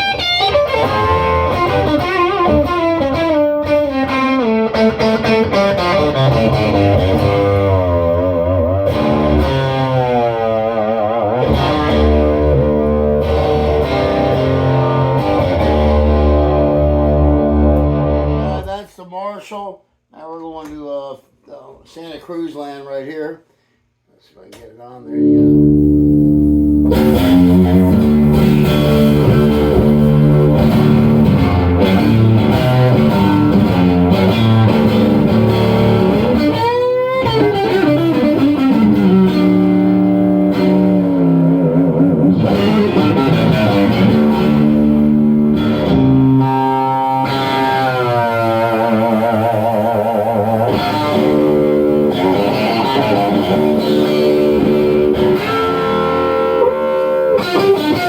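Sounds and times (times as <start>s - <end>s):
electric guitar playing: 0.0s - 18.7s, 25.1s - 58.0s.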